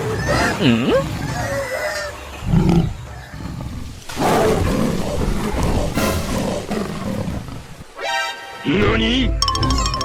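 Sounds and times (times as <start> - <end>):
tiger growling: 0.0 - 8.0
tiger roaring: 2.4 - 8.0.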